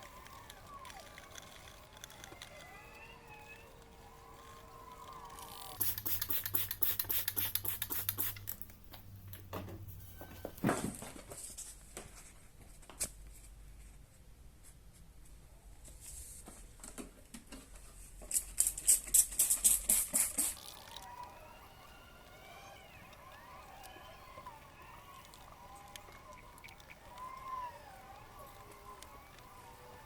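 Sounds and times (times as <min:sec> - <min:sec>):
sandpaper scratching plastic: 0:05.5 - 0:08.7, 0:18.6 - 0:30.0.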